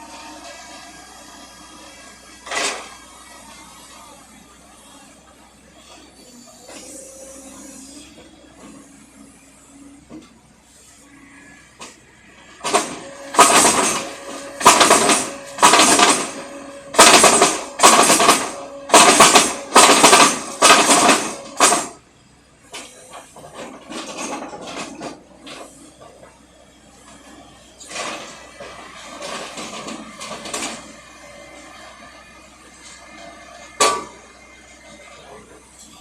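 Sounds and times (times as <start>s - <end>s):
drilling rig metallic clanks: 12.6s - 22.0s.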